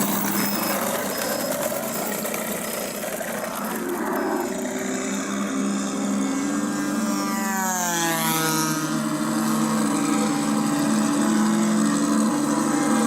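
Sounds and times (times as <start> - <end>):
low engine drone effect: 0.0 - 13.0
model plane propeller whine: 0.0 - 13.0.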